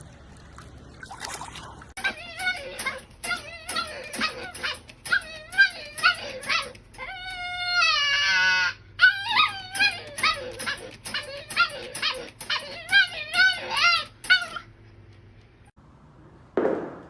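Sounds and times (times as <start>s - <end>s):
dog howling: 2.0s - 14.6s
dog yipping and whining: 2.0s - 14.7s.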